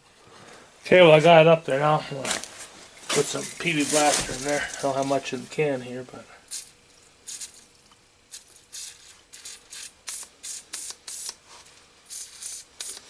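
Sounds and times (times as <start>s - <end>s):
aerosol can hissing spurts: 6.5s - 7.7s, 8.3s - 13.0s.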